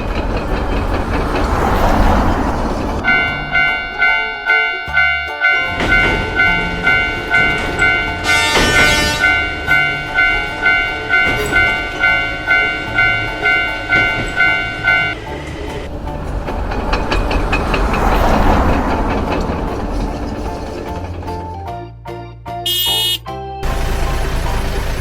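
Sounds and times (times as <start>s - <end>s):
low train rumble: 0.0s - 22.6s, 23.3s - 25.0s
railroad crossing bell ringing: 3.0s - 15.9s, 22.7s - 23.2s.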